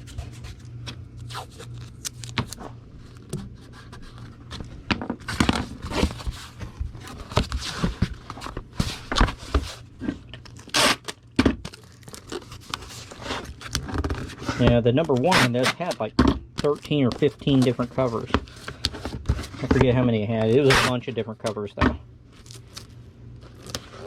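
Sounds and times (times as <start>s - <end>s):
cardboard scrapes and crinkles: 2.5s - 11.1s, 12.0s - 15.9s, 16.9s - 21.1s, 23.5s - 24.0s
tape pulled off roll and torn: 10.4s - 14.4s.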